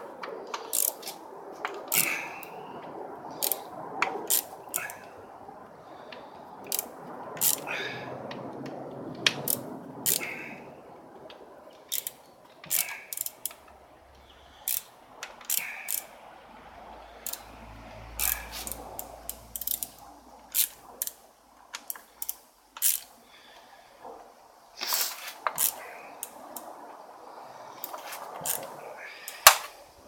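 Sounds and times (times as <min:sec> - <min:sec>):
metallic tool clicks: 0:00.6 - 0:01.2, 0:04.3 - 0:05.0, 0:17.3 - 0:17.5, 0:18.2 - 0:21.2, 0:27.8 - 0:28.7.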